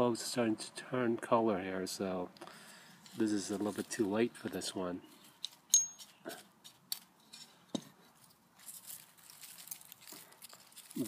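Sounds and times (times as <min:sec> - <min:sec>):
garlic skin rustling: 0:08.1 - 0:11.0.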